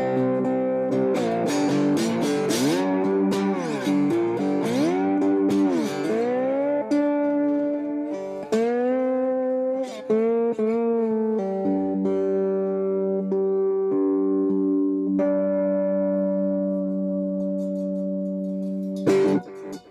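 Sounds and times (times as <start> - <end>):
electric guitar chords ringing: 0.0 - 19.9.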